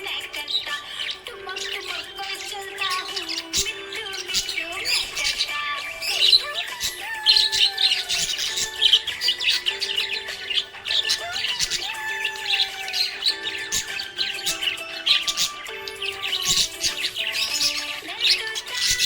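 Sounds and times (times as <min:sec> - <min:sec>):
parrots chirping: 0:00.0 - 0:19.0
slow background music: 0:00.0 - 0:19.0.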